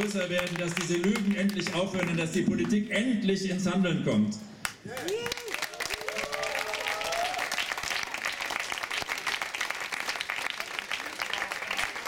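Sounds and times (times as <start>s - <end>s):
crowd applauding: 0.0s - 2.8s, 4.8s - 12.0s
crowd cheering: 4.8s - 12.0s.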